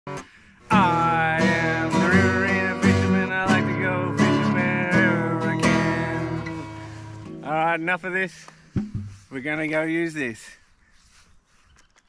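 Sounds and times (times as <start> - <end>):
strummed acoustic guitar: 0.1 - 9.3.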